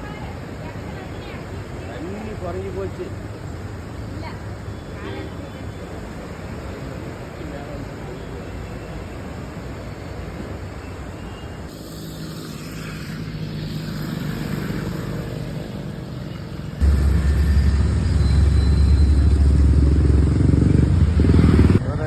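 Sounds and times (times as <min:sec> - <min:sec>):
vehicle engine running: 0:13.3 - 0:21.8
loud low rumble: 0:16.8 - 0:21.8.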